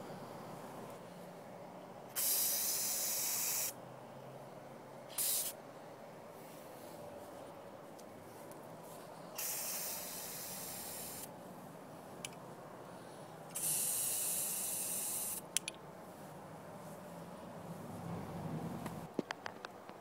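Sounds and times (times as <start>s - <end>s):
spray can hissing: 2.2s - 3.8s, 5.1s - 5.6s, 9.4s - 11.3s, 13.6s - 15.5s
sharp clicks: 15.0s - 15.8s.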